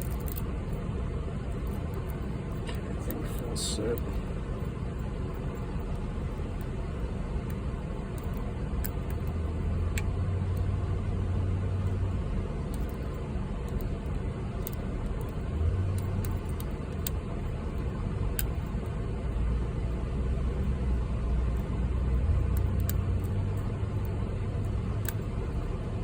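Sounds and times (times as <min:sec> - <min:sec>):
lock picks ticking in padlock: 0:14.6 - 0:17.2.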